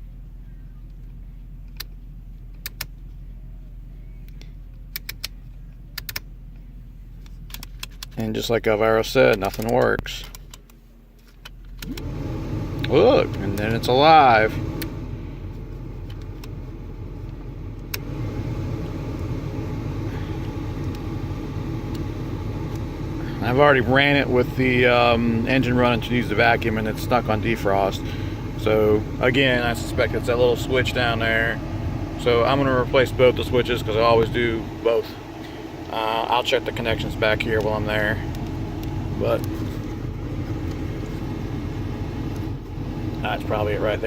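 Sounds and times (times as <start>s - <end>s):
car blower fan rushing: 0.7s - 44.0s
low hum: 10.3s - 44.0s
low rumble: 11.9s - 44.0s.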